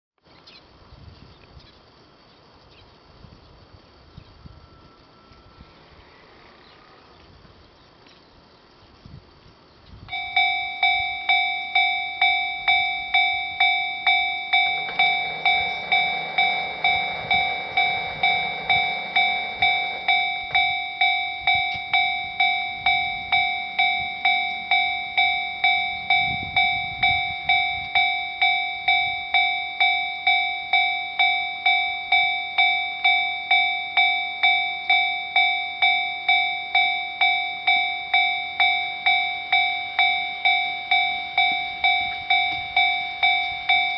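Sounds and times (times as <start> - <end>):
level-crossing warning bell: 4.3 - 6.0, 10.1 - 43.9
train rumble: 9.9 - 43.9.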